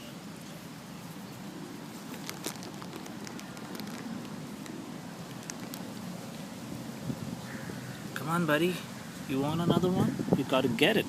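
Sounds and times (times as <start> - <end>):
outdoor background murmur: 0.0 - 11.0
sharp small clicks and crackles: 1.9 - 6.4.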